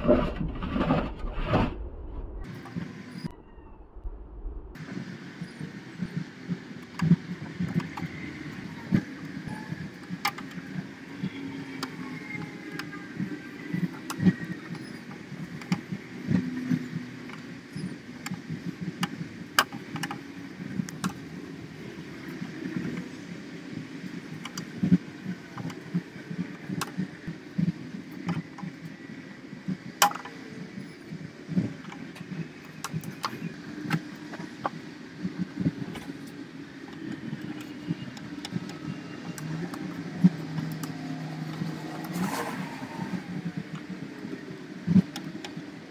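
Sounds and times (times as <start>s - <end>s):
steady low hum: 0.0s - 10.2s.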